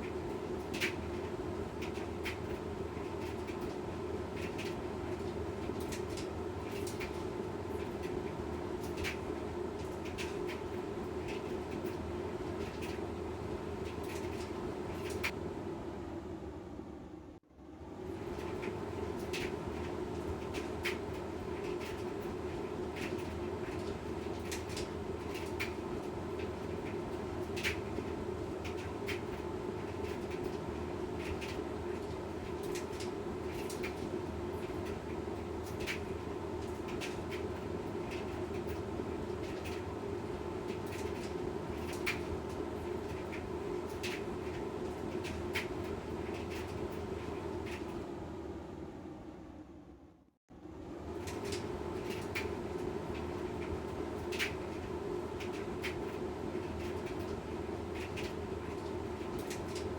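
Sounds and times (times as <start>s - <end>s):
washing machine motor and drum hum: 0.0s - 59.9s.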